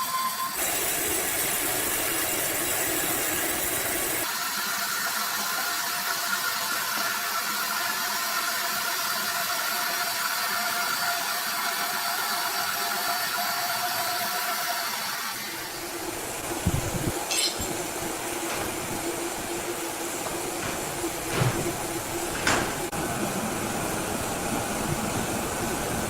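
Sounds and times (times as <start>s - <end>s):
sawmill machinery whining: 15.3s - 26.0s.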